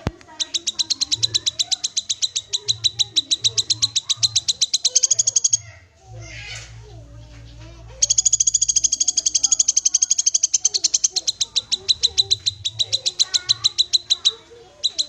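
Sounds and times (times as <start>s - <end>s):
bird calling high chipping notes: 0.0s - 6.7s, 7.7s - 15.0s.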